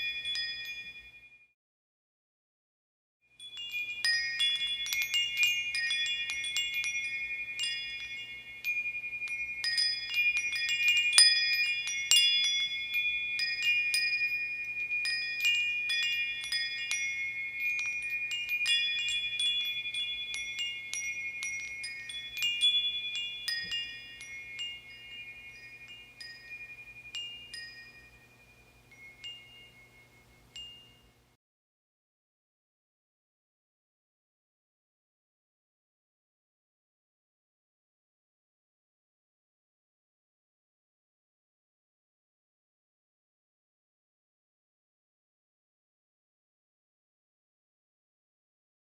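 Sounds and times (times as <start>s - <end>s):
metal wind chimes ringing: 0.0s - 1.5s, 3.4s - 31.4s.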